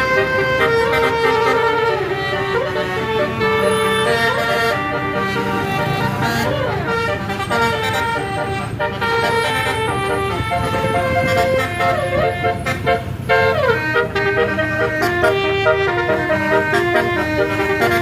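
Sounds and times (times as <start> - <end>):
bus horn playing a melody: 0.0 - 18.0
vehicle noise: 0.0 - 18.0.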